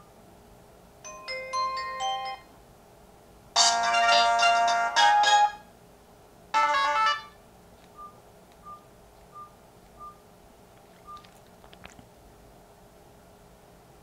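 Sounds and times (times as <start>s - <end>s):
keypad beeps: 7.9s - 10.2s, 11.0s - 11.3s.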